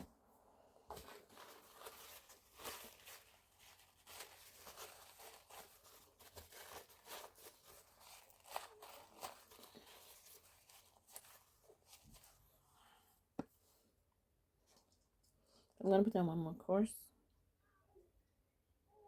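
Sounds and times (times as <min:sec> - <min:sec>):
faint rustling: 0:00.8 - 0:12.9.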